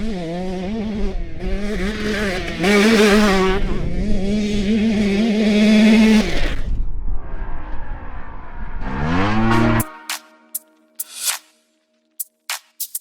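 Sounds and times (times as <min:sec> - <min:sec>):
motocross bike engine revving: 0:00.0 - 0:06.7, 0:08.7 - 0:10.0.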